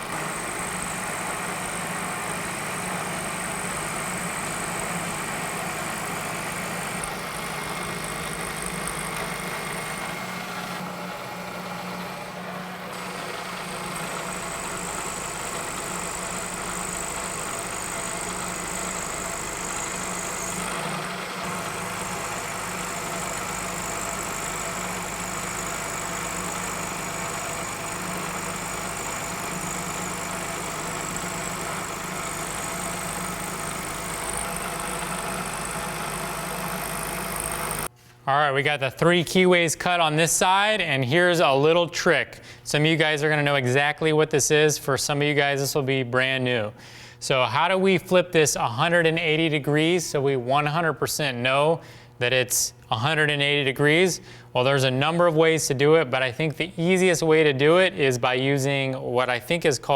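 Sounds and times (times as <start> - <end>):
high machine whine: 0.0 - 37.9
milling machine hum: 0.0 - 38.0.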